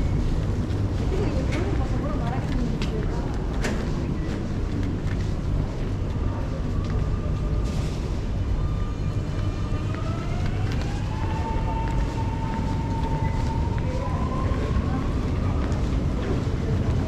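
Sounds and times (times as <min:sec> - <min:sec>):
train low rumble: 0:00.0 - 0:17.0
train whine rising in pitch: 0:08.5 - 0:15.6.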